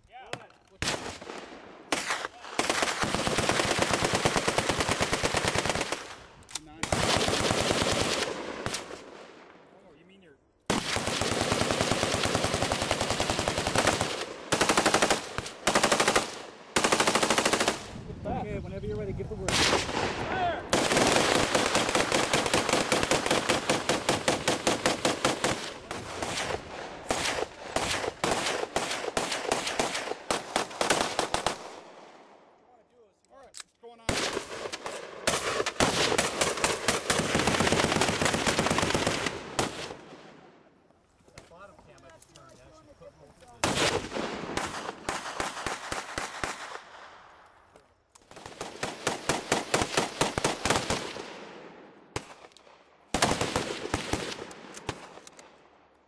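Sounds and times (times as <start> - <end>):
machine gun automatic fire: 6.8 - 8.9, 10.7 - 17.9, 20.7 - 31.6, 34.1 - 40.0.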